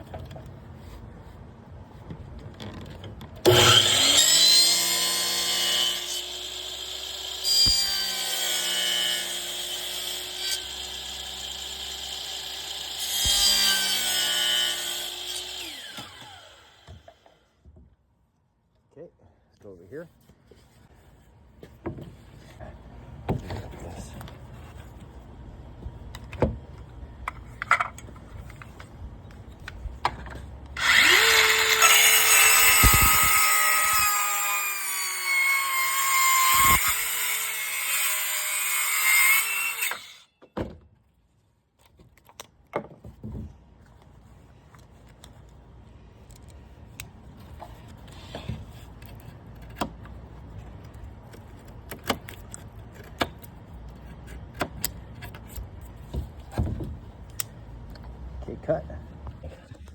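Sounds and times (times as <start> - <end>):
power saw cutting wood: 3.4 - 17.3, 30.8 - 40.3.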